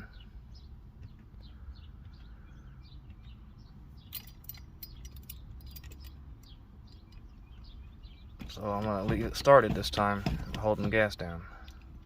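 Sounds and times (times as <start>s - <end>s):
small birds chirping: 0.0s - 12.0s
light clicks and rattles: 4.0s - 7.4s.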